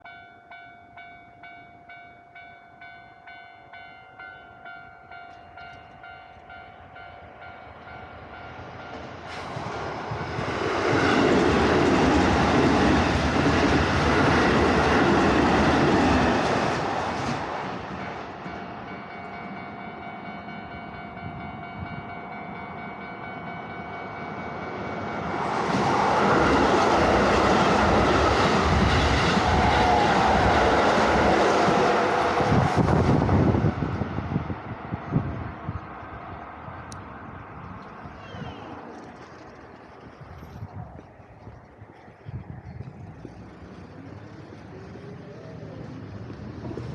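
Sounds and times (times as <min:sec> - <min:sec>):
level-crossing warning bell: 0:00.0 - 0:09.3, 0:17.8 - 0:31.0
electric train passing: 0:00.0 - 0:46.9.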